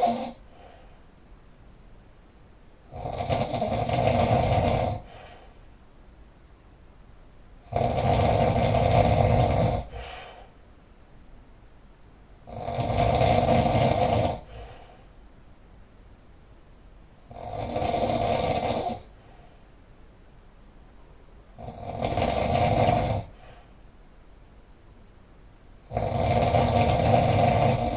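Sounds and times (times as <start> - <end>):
loud snoring: 0.0 - 0.4, 2.9 - 5.3, 7.6 - 10.4, 12.4 - 14.9, 17.3 - 19.1, 21.6 - 23.6, 25.8 - 27.9
faint breath out: 0.4 - 1.1, 5.0 - 5.7, 9.9 - 10.6, 14.4 - 15.1, 19.1 - 19.7, 23.3 - 23.8.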